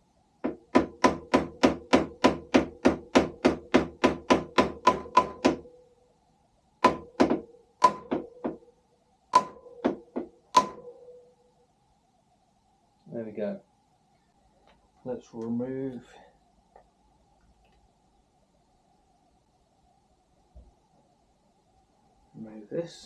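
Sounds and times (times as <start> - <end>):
hammer tapping on metal tool: 0.4 - 5.7, 6.8 - 8.6, 9.3 - 11.0.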